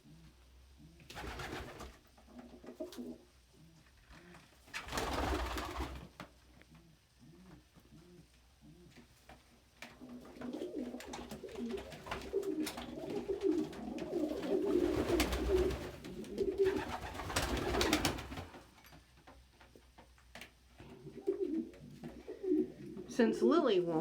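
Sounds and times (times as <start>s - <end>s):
pigeons cooing: 0.0s - 5.7s, 6.7s - 9.0s, 9.9s - 18.3s, 20.8s - 23.1s.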